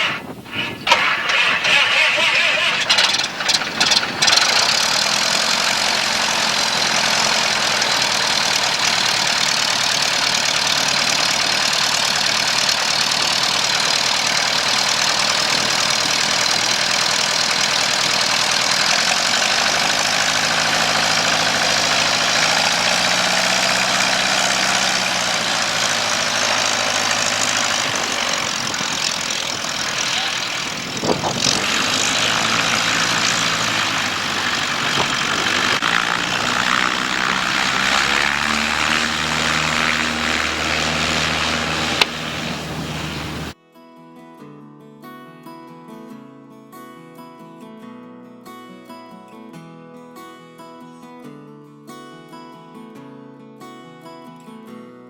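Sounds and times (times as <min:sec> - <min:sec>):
propeller airplane engine running: 0:00.0 - 0:43.6.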